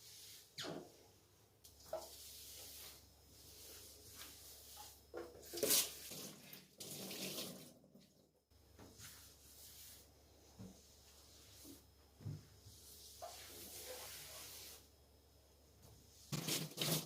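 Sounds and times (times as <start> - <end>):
tap water running into sink: 6.8 - 7.8.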